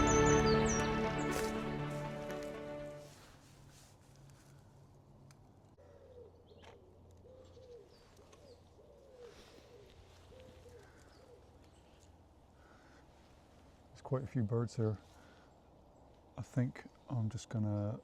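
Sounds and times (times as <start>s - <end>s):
small birds chirping: 0.0s - 2.0s, 5.8s - 13.0s.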